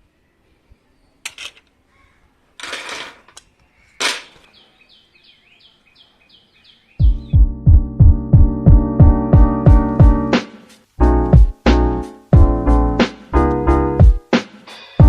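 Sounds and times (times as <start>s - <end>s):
bird chirping rapidly: 3.7s - 7.5s
music with a steady beat: 7.0s - 15.0s.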